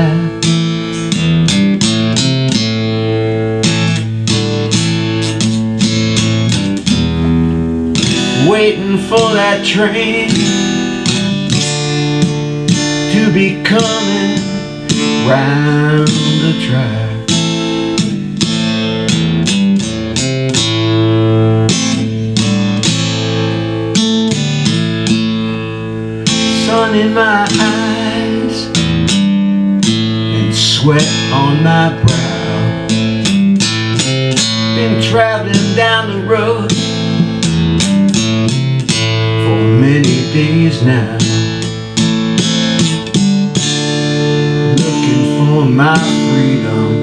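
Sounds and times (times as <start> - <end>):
person singing: 0.0 - 1.2, 8.0 - 18.2, 25.4 - 29.1, 30.0 - 33.4, 34.4 - 37.5, 38.9 - 43.1, 44.2 - 47.0
acoustic guitar strumming blues: 0.0 - 47.0.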